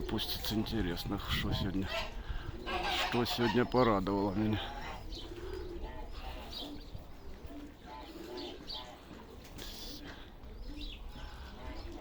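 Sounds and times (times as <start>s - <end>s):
pigeons cooing: 0.0s - 12.0s
wind rumble on microphone: 0.4s - 3.0s.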